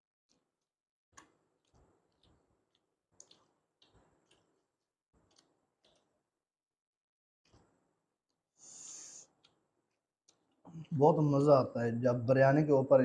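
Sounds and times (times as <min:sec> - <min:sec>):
soft chewing: 0:00.3 - 0:06.3, 0:08.7 - 0:11.0.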